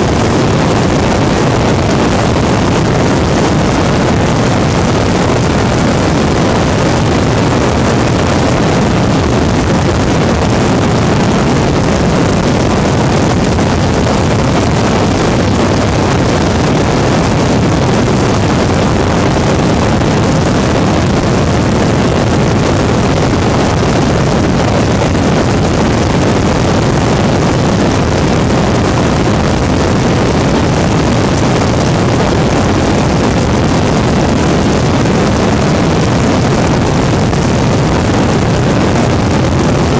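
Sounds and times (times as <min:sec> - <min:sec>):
ultralight engine and propeller: 0:00.0 - 0:39.9
wind buffeting microphone: 0:00.0 - 0:39.9.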